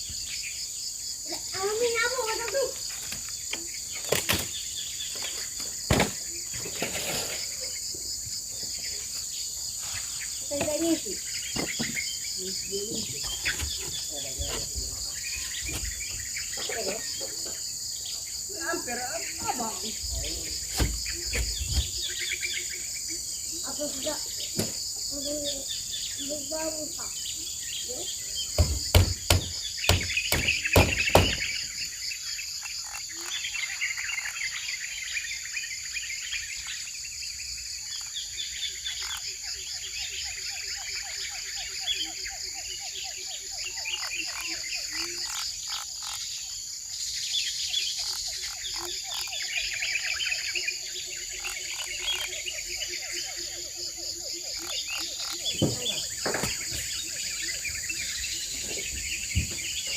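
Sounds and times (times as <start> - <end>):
birds chirping: 0.0 - 59.9
high-pitched insect buzzing: 28.5 - 34.7, 37.8 - 39.6, 43.7 - 46.6, 47.7 - 53.6.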